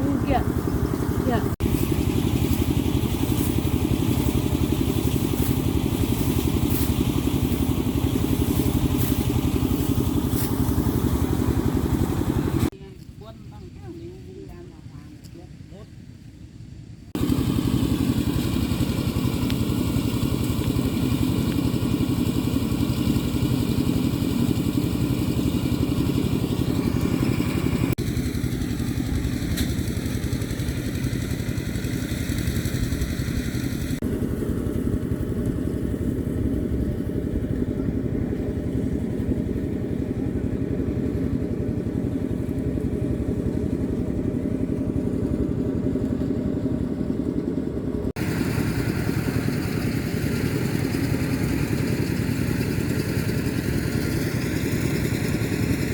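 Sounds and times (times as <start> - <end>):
small engine running: 0.0 - 55.9.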